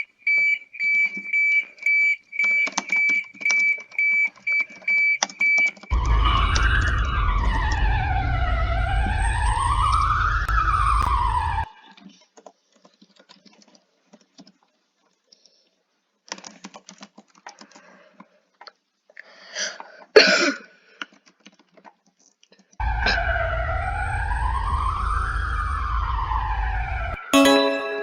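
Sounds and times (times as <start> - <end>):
faint clicks and taps: 12.0 - 19.2, 21.0 - 22.8
alert siren wailing: 22.8 - 28.0.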